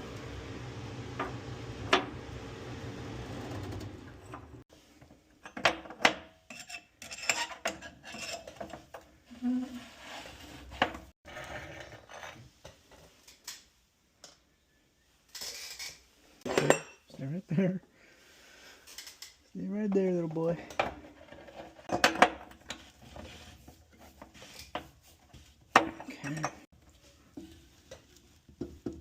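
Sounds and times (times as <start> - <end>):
steady low hum: 0.0 - 4.6
metal tools clinking and scraping: 5.4 - 9.0, 15.3 - 17.2, 25.9 - 26.7.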